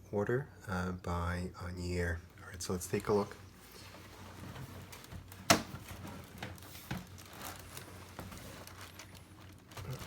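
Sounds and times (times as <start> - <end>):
packaging crinkling and rustling: 2.7 - 10.0.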